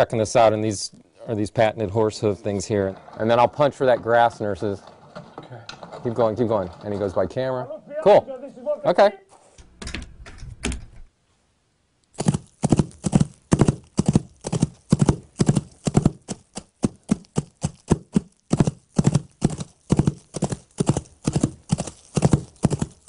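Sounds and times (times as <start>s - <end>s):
galloping horse hoofbeats: 12.2s - 23.0s.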